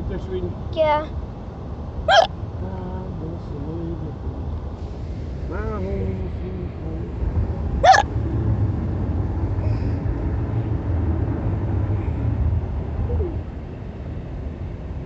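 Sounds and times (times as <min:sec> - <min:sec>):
car cabin low rumble: 0:02.0 - 0:15.0
person hiccuping: 0:02.1 - 0:02.3, 0:07.8 - 0:08.1.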